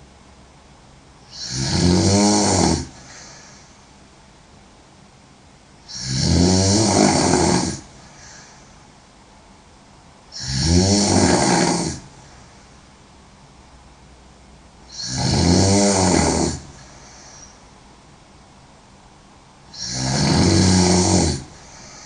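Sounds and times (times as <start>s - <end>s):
woman snoring: 1.3s - 3.6s, 5.9s - 8.5s, 10.3s - 12.2s, 14.9s - 17.6s, 19.7s - 22.0s.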